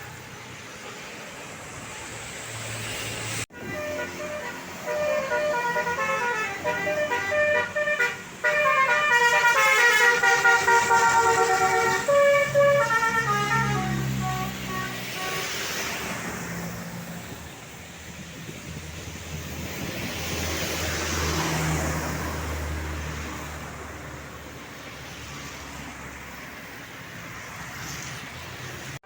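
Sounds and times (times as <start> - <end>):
road vehicles passing: 0.0 - 29.0
multi-tone bus horn tune: 3.5 - 16.3.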